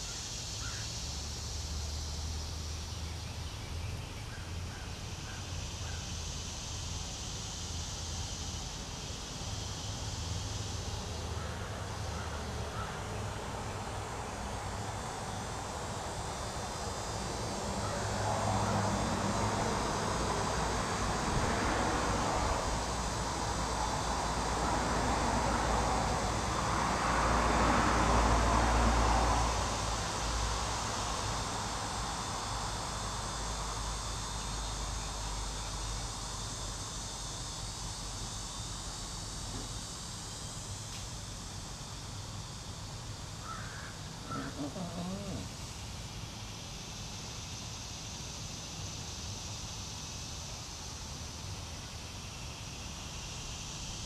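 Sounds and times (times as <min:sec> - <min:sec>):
insects chirring: 0:00.0 - 0:54.0
distant engine passing by: 0:10.8 - 0:36.3, 0:43.4 - 0:45.6.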